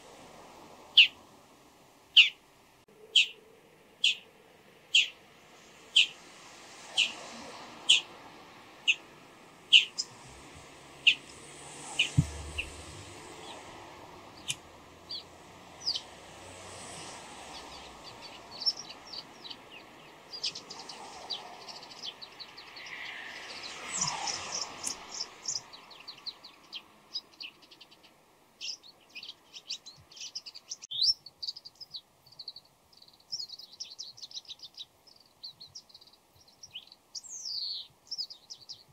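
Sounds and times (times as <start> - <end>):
shrike calling: 2.1 - 5.2, 5.9 - 6.2, 7.8 - 8.1, 9.7 - 10.2, 11.0 - 13.6.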